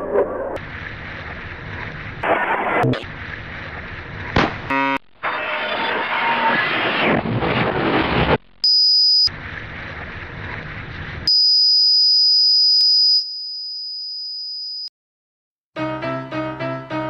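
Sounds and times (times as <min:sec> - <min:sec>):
rushing noise: 0:00.0 - 0:08.4
high electronic beep tone: 0:08.6 - 0:09.3, 0:11.3 - 0:13.3.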